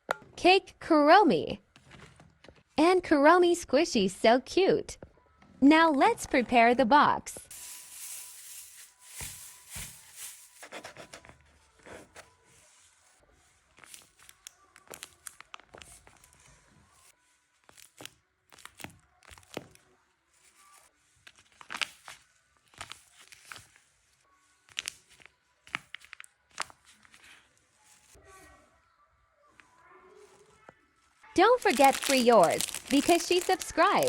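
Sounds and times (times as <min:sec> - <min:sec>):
paper tearing and crinkling: 0:13.8 - 0:16.3, 0:31.4 - 0:34.0.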